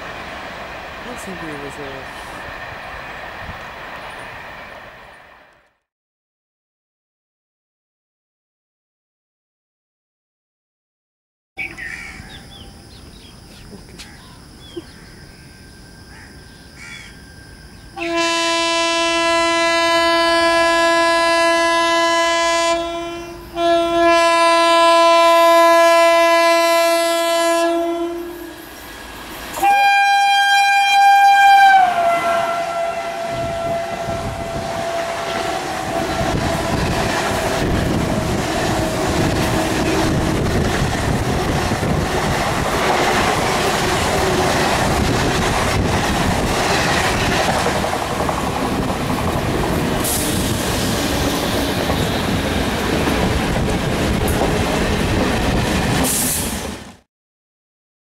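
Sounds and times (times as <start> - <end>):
train rumbling and clattering past: 0.0 - 5.8, 32.0 - 57.0
locomotive horn blasts: 18.0 - 28.6, 29.6 - 37.0.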